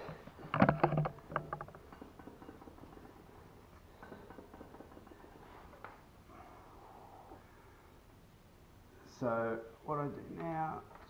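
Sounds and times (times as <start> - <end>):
faint metallic clicks and knocks: 0.0 - 6.1.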